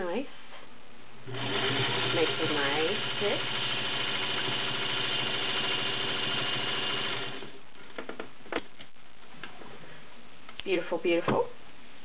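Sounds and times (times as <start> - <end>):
sewing machine running: 1.3 - 7.6.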